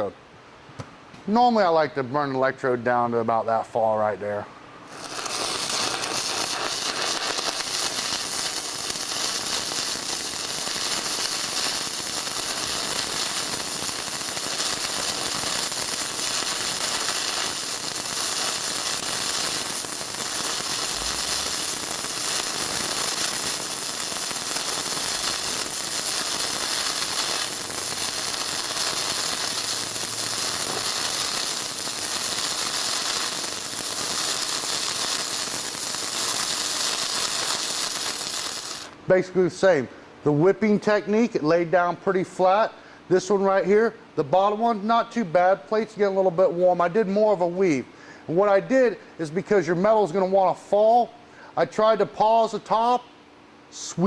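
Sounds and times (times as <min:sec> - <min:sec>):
welding arc crackling: 0:04.9 - 0:39.0.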